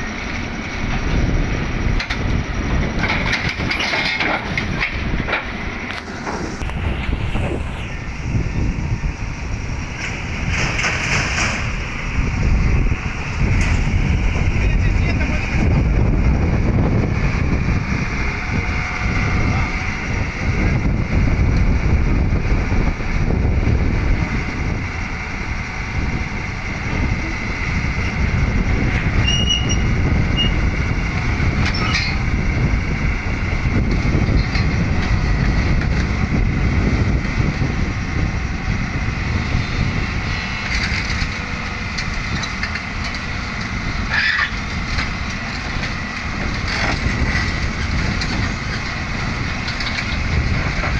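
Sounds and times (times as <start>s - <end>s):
excavator diesel engine rumbling: 0.0s - 50.9s
high-pitched machine squeaks: 29.2s - 30.6s.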